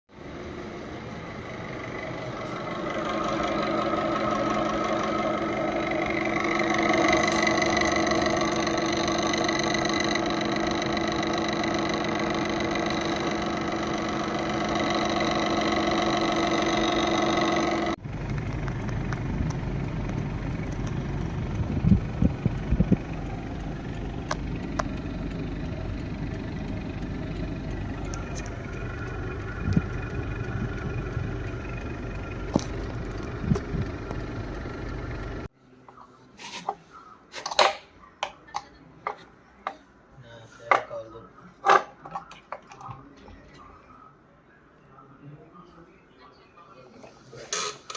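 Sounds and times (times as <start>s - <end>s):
washing machine whining: 0.2s - 35.5s
rough rumble: 0.9s - 35.5s.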